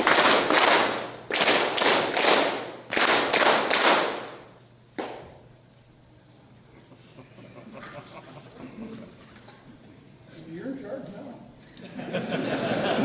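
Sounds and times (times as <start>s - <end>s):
crowd clapping in unison: 0.0s - 5.3s
single clap: 0.0s - 5.4s.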